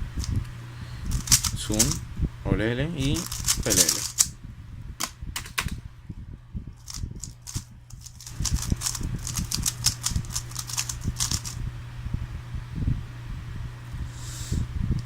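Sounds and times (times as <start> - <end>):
puzzle cube clicking: 1.1 - 2.0, 3.0 - 4.3, 6.8 - 11.6.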